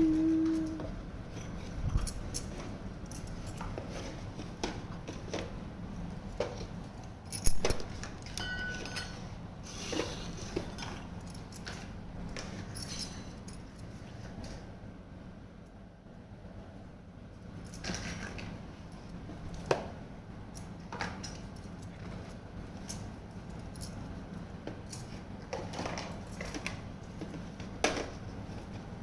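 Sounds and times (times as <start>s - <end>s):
brief ring: 8.4s - 9.2s.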